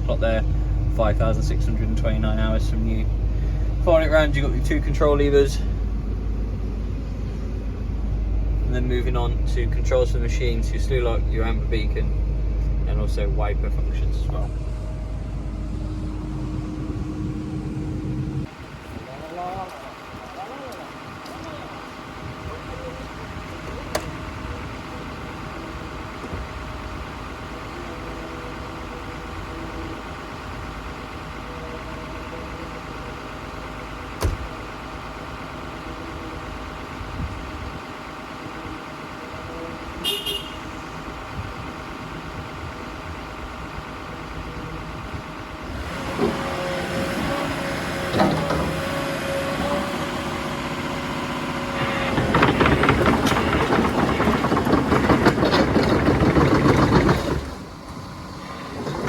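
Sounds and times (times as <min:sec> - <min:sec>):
excavator diesel engine running: 0:00.0 - 0:59.0
short knocks: 0:51.8 - 0:57.7.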